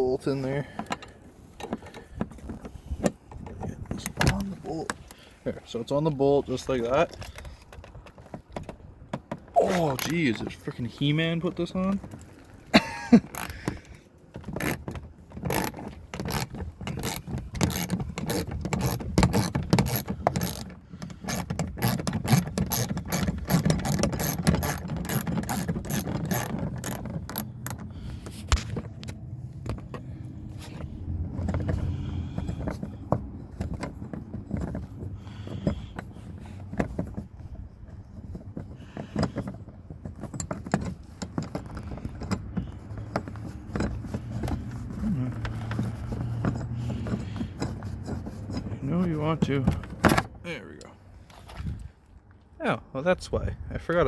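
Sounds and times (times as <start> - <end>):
ratchet clicking: 13.3 - 14.0, 14.6 - 28.0.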